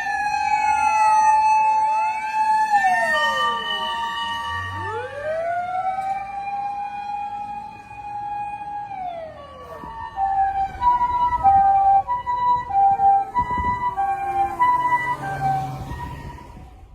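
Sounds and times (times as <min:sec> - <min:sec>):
two-tone hi-lo siren: 0:00.0 - 0:16.9
siren tone sliding down: 0:07.0 - 0:16.8.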